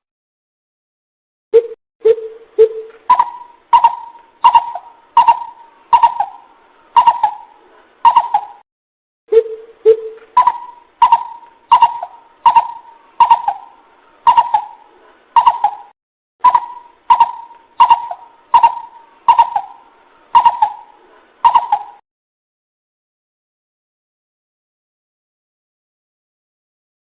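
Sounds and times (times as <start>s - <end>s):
bird hooting: 1.6s - 8.6s, 9.3s - 22.0s.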